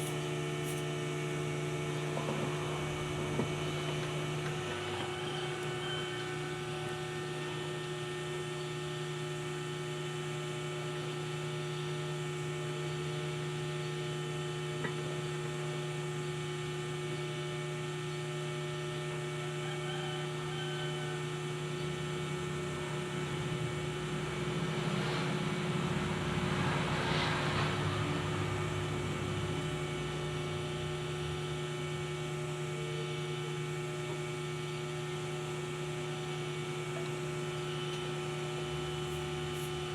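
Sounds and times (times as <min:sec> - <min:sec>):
electrical hum: 0:00.0 - 0:39.9
rushing noise: 0:24.0 - 0:29.5.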